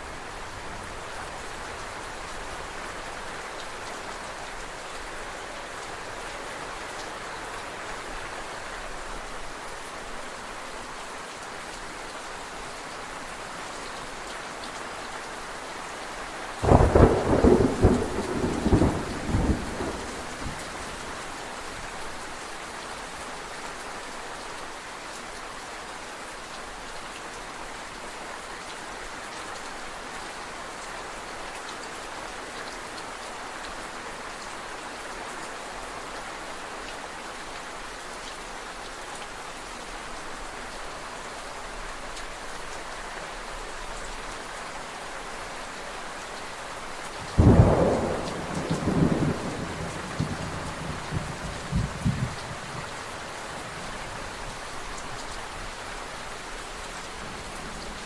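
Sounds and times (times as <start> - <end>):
steady rain falling: 0.0 - 58.0
rumble of thunder: 16.6 - 21.0, 47.4 - 53.1.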